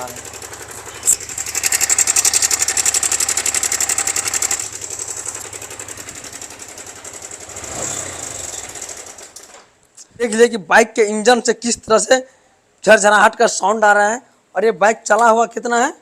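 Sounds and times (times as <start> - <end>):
motorcycle engine idling with rattling: 0.0 - 9.8.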